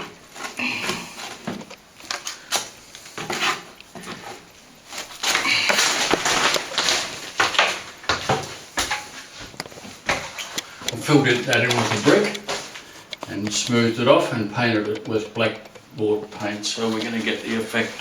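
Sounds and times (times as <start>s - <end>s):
sharp clicks: 10.5s - 12.5s.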